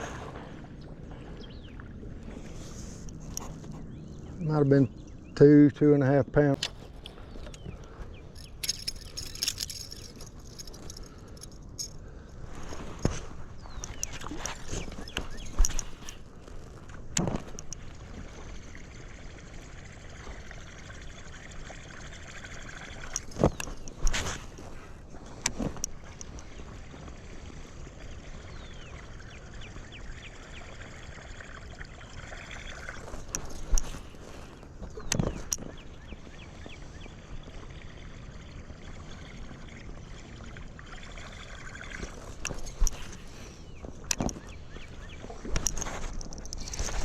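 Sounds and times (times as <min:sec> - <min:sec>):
river water running: 0:06.4 - 0:47.0
river water flowing: 0:08.2 - 0:16.9.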